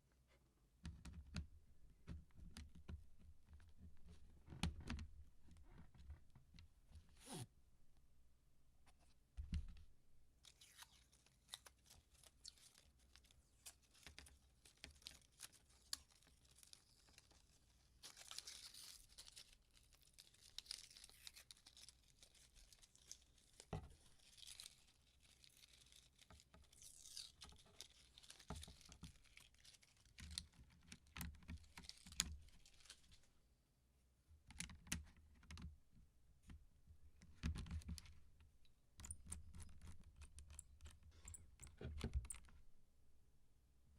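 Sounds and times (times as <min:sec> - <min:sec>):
crinkling and tearing: 0:10.5 - 0:33.3.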